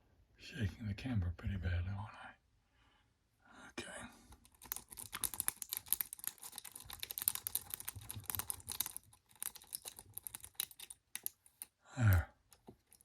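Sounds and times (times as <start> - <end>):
rake clicking in a lock: 4.4 - 11.7.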